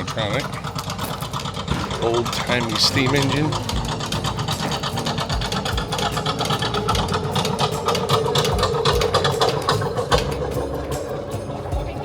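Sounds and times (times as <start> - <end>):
steam engine mechanical clatter: 0.0 - 12.0
steady hum: 0.6 - 12.0
low thumps: 1.7 - 12.0.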